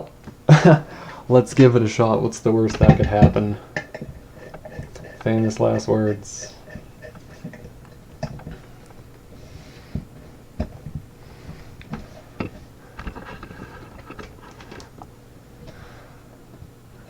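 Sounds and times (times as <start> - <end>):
faint metallic rings: 2.2 - 9.8.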